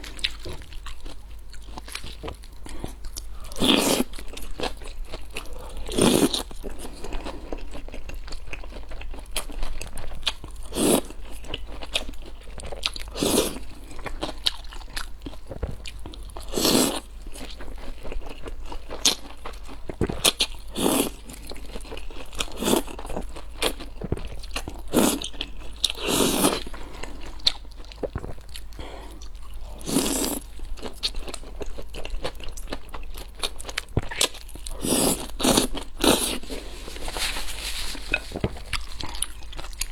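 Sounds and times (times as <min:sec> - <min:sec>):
wet chewing: 0:14.0 - 0:39.9.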